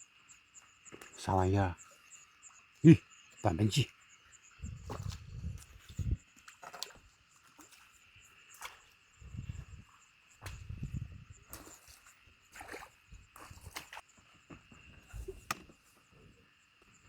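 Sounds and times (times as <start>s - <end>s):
insect trill: 0.0s - 17.0s.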